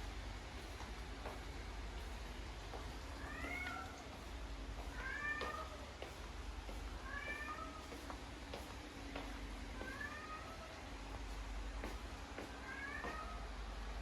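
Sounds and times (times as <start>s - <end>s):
cat meowing: 3.2s - 4.1s, 4.9s - 5.8s, 7.0s - 7.8s, 9.8s - 10.7s, 12.6s - 13.5s.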